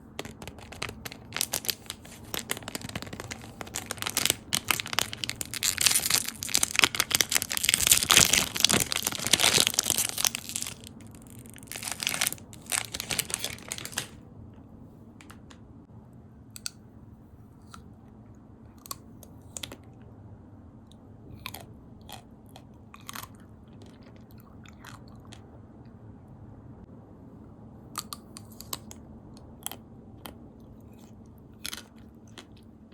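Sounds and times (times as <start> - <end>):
crunching and chewing: 0.0 - 14.2, 21.3 - 25.5, 28.0 - 32.9.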